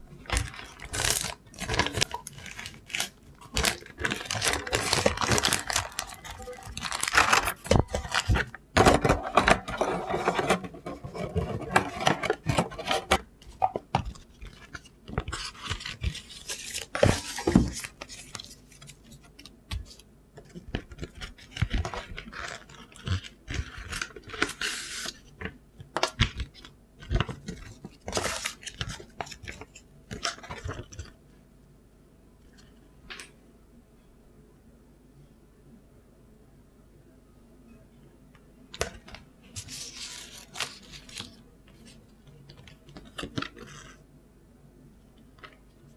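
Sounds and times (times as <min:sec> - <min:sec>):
packaging rustling and crinkling: 0:00.0 - 0:31.2, 0:38.8 - 0:44.0.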